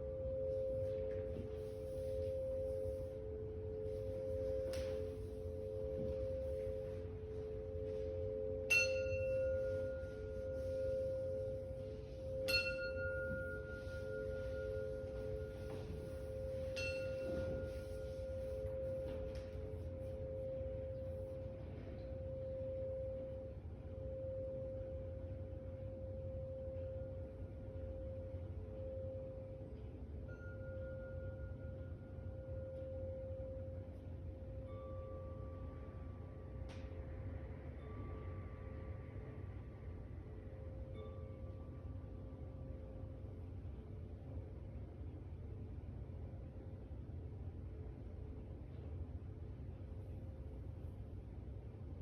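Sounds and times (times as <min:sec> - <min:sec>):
low chime tones pulsing: 0:00.0 - 0:44.8
high chime bar struck: 0:08.5 - 0:10.6, 0:12.3 - 0:18.5.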